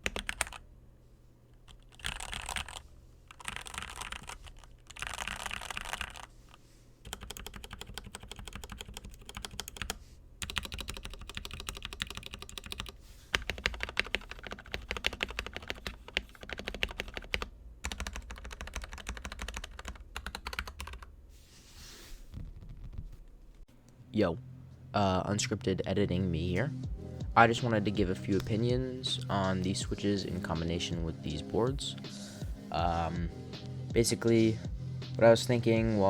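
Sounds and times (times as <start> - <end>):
fast typing on mechanical keyboard: 0.0 - 0.6, 1.7 - 6.3, 7.0 - 21.1.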